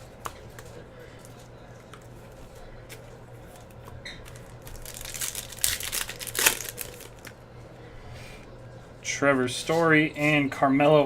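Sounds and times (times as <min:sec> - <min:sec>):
wrapper tearing and crinkling: 0:04.2 - 0:07.4.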